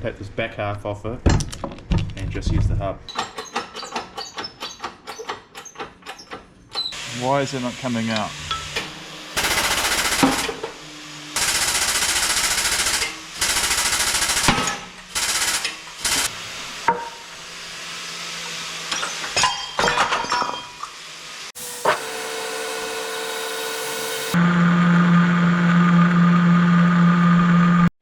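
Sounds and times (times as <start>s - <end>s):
machine humming: 7.0s - 18.2s, 21.6s - 26.6s
pneumatic hammer rattling: 8.8s - 10.8s, 11.4s - 16.3s.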